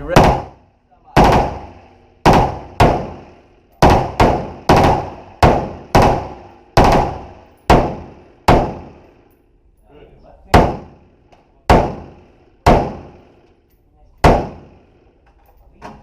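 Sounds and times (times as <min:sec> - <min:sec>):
rifle single shots echoing: 0:00.0 - 0:09.1, 0:10.5 - 0:11.0, 0:11.7 - 0:13.4, 0:14.2 - 0:15.0.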